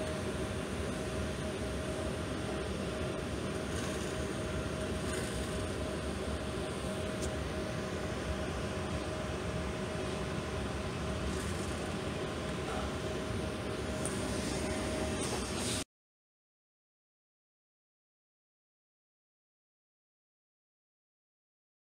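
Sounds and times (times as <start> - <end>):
constant mid-pitched hum: 0.0 - 15.8.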